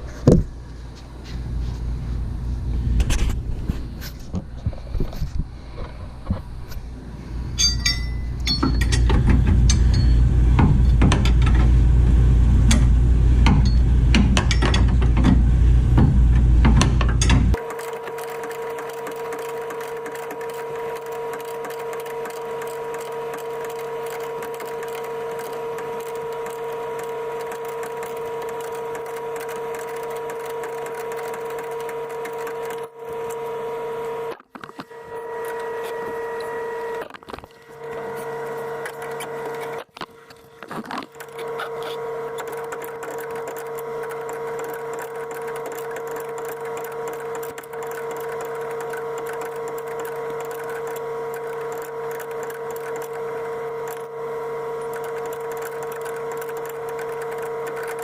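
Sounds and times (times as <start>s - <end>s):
crackling scraping noise: 1.0s - 6.9s, 34.3s - 53.2s
power tool motor running: 17.5s - 58.0s.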